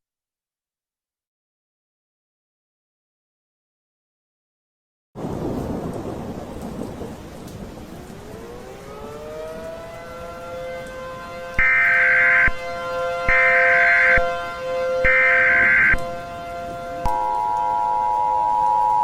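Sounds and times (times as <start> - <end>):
warning siren wailing: 7.7 - 19.0.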